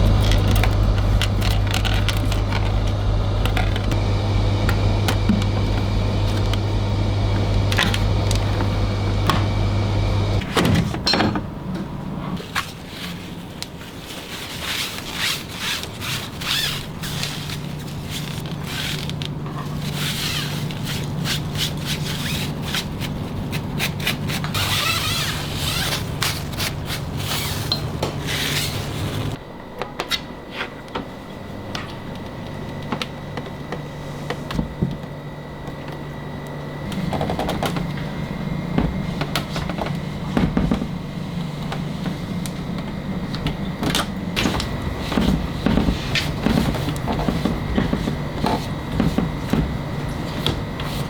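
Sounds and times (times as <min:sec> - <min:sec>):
steady hum: 0:00.0 - 0:10.5
rubbing and scraping while cleaning: 0:12.4 - 0:29.4, 0:44.4 - 0:51.0.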